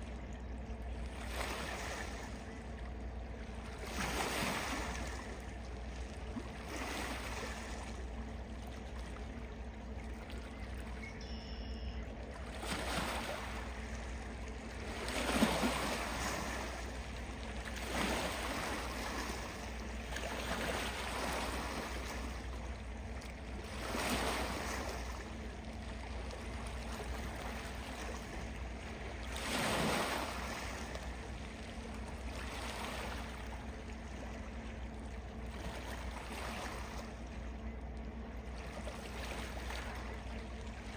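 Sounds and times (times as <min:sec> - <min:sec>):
small waves lapping: 0:00.0 - 0:40.9
steady low hum: 0:00.0 - 0:40.9
faint bird call: 0:11.0 - 0:12.2.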